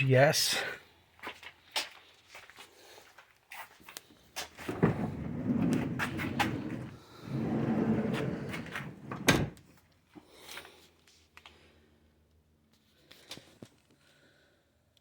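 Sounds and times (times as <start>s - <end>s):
sliding door rolling on track: 4.6s - 9.6s
sliding door thudding shut: 4.7s - 9.6s.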